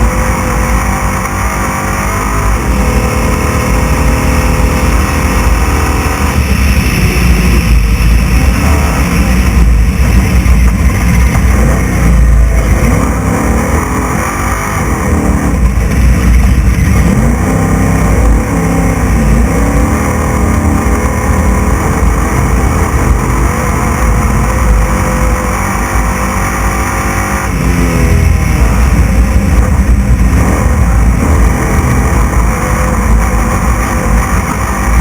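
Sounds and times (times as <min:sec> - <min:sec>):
truck engine revving: 0:00.0 - 0:35.0.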